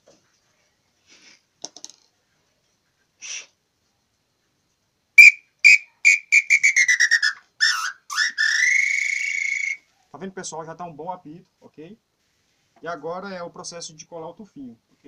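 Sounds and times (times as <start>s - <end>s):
bird call whistle notes: 5.2s - 9.9s.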